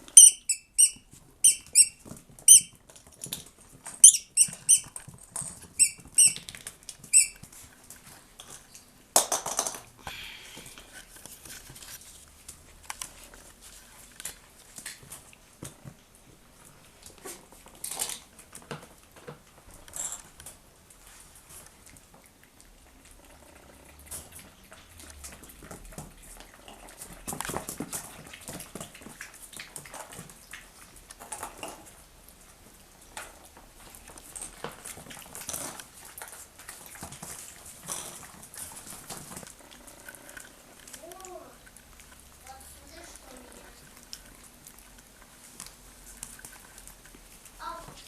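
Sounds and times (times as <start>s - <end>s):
puppies scuffling: 10.5s - 48.0s.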